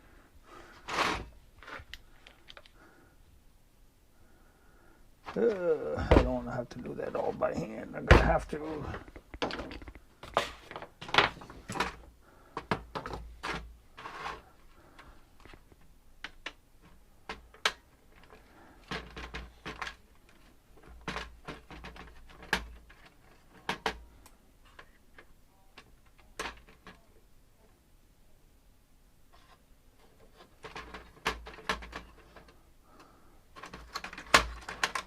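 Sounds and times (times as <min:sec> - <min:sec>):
clicks and knocks of parts: 0:00.8 - 0:02.8, 0:07.1 - 0:27.2, 0:29.4 - 0:35.0.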